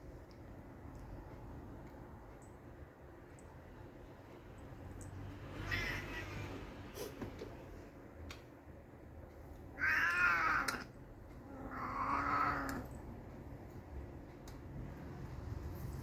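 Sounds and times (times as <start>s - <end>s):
cat meowing: 5.6s - 6.6s, 9.8s - 12.9s.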